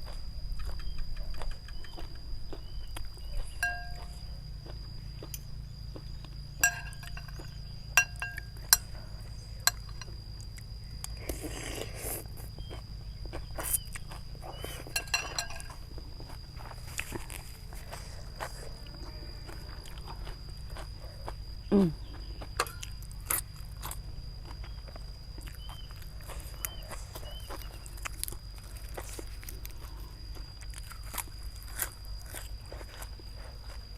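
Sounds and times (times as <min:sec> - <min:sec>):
utensils clinking on ceramic bowl: 0:03.6 - 0:04.2, 0:06.6 - 0:08.9, 0:14.9 - 0:15.8
slurping: 0:11.2 - 0:12.4.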